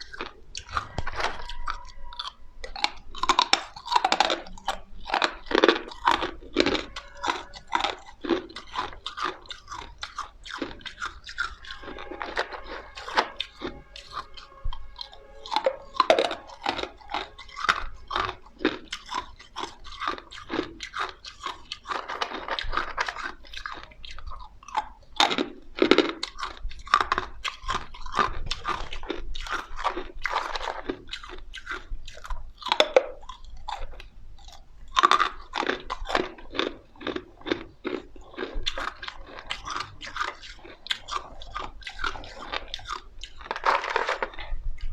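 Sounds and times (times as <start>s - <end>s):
chewing ice crunches: 0.0s - 44.9s
squeaky ringing tone: 0.7s - 2.9s, 6.4s - 8.5s, 11.4s - 18.6s.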